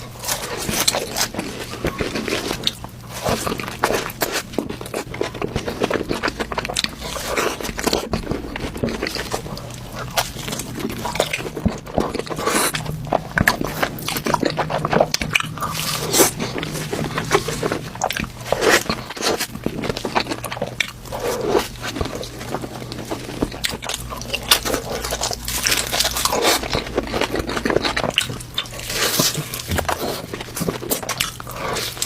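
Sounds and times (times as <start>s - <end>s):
biting and chewing crunches: 0.0s - 32.0s.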